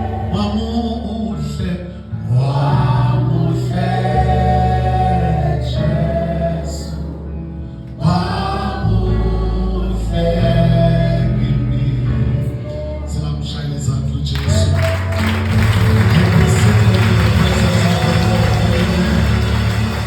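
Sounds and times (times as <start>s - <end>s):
gospel choir singing: 0.0s - 13.2s, 14.6s - 20.0s
steady bass: 0.0s - 20.0s.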